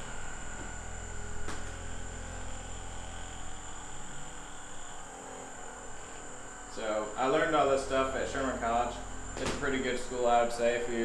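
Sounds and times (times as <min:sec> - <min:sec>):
electric massager buzzing: 0:00.0 - 0:11.0.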